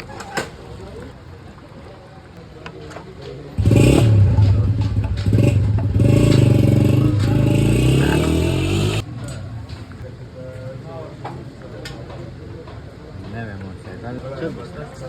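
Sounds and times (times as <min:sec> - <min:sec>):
motorcycle engine revving: 0:03.6 - 0:09.1.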